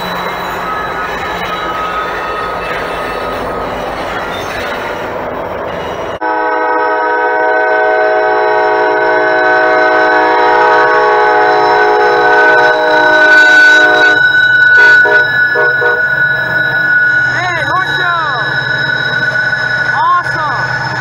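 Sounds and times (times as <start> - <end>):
train passing on rails: 0.0 - 21.0
locomotive air horn: 6.2 - 21.0.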